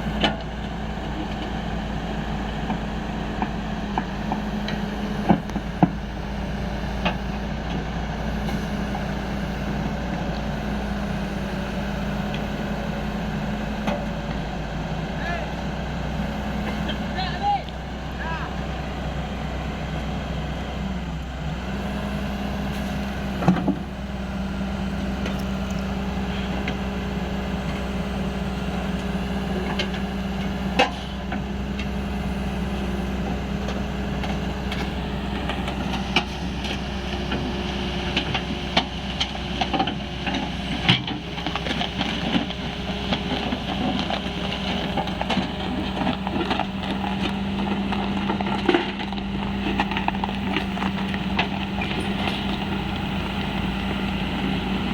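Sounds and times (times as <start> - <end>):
excavator diesel engine running: 0.0 - 54.9.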